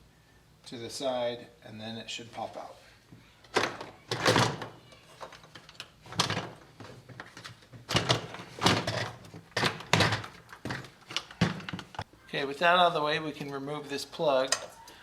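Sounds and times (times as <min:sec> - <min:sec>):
hard plastic knocks and clunks: 0:07.8 - 0:12.0.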